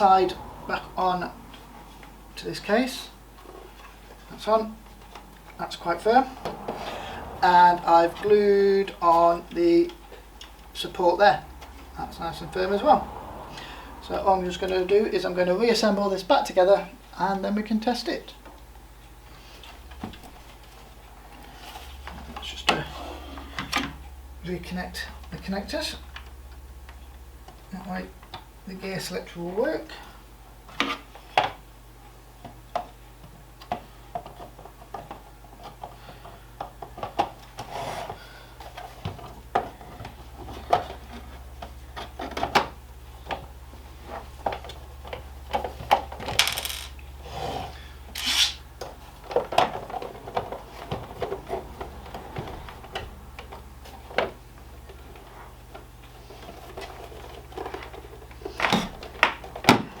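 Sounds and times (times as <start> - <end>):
plastic rubbing scrapes: 47.2 - 48.6.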